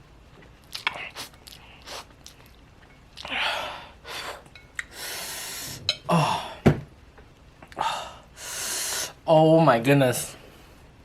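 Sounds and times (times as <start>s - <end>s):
man groaning: 6.1s - 6.6s.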